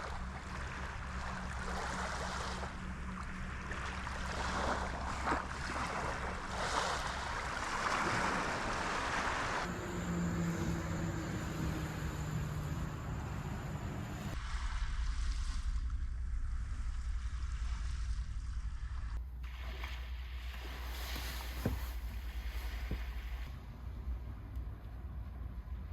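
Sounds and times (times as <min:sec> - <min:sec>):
surf washing: 0:00.0 - 0:15.8, 0:17.4 - 0:23.7
wind rumble on microphone: 0:00.0 - 0:19.3
steady low hum: 0:00.0 - 0:25.9.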